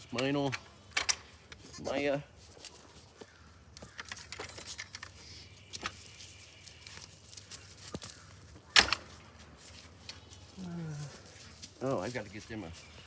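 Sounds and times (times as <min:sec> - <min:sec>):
light clicks and rustles: 0:02.4 - 0:12.4.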